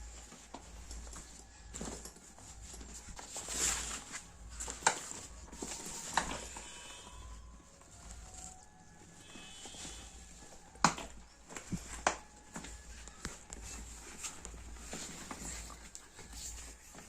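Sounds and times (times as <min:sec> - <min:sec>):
bag fabric rustling: 0:00.0 - 0:17.0
bag hardware clicking and knocking: 0:10.8 - 0:13.8.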